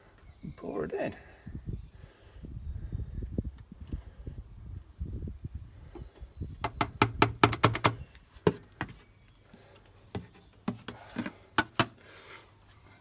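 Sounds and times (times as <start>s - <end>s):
sharp clicks and knocks: 6.0s - 8.6s.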